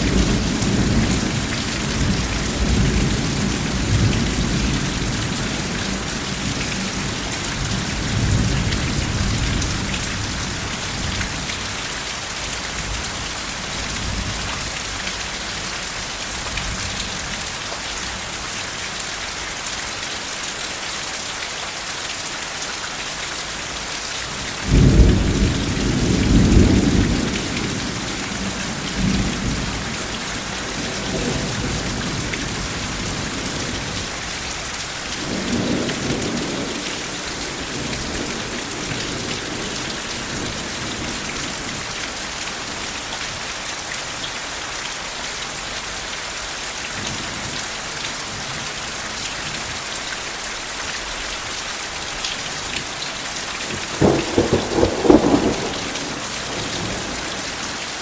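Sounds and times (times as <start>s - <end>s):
steady rain falling: 0.0s - 58.0s
thunder rumbling: 53.8s - 57.7s.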